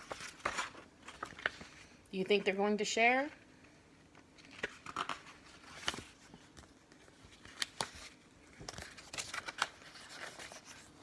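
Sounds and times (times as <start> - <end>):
book pages turning: 0.0 - 1.9, 4.2 - 11.0.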